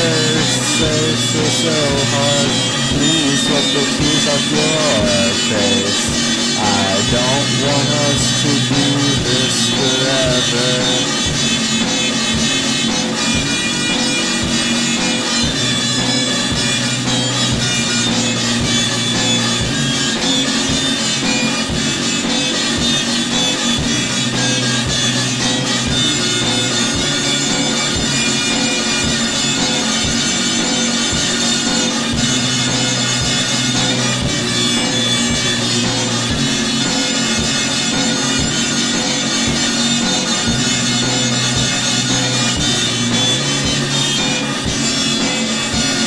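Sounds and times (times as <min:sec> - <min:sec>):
droning reedy tones: 0:00.0 - 0:12.4
steady drum beat: 0:00.0 - 0:46.0.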